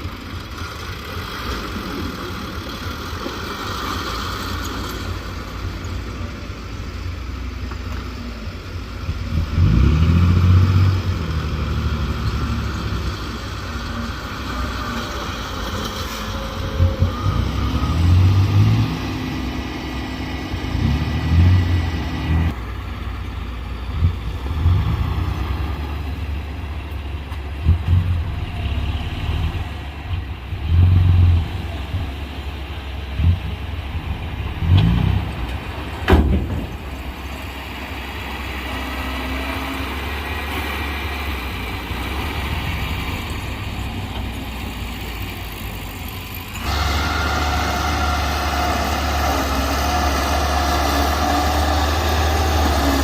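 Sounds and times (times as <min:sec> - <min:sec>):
heavy machinery diesel engine rumbling: 0:00.0 - 0:53.0.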